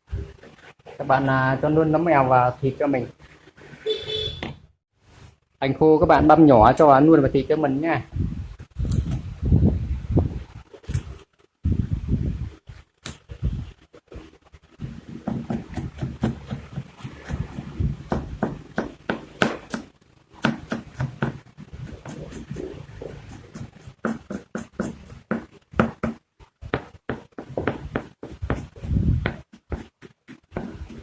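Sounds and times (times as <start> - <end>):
knife chopping on cutting board: 15.1 - 26.2, 26.8 - 31.0.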